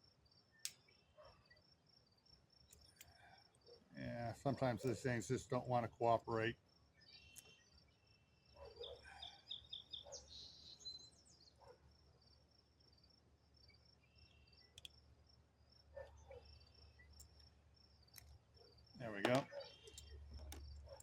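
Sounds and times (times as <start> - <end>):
faint crickets chirping: 0.0 - 21.0
handling rustles and clicks: 19.1 - 21.0.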